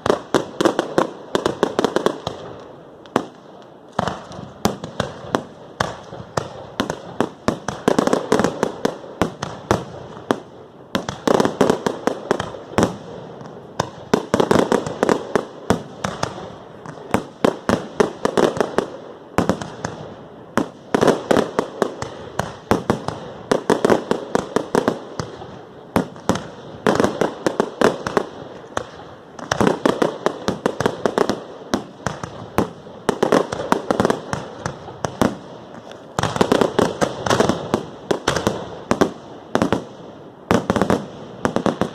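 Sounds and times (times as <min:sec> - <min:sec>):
fireworks bangs and crackles: 0:00.0 - 0:41.9.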